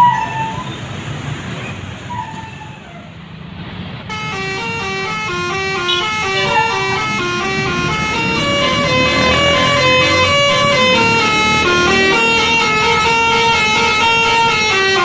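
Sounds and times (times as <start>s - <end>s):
road traffic noise: 0.0s - 15.0s
bus horn playing melody: 4.1s - 15.0s.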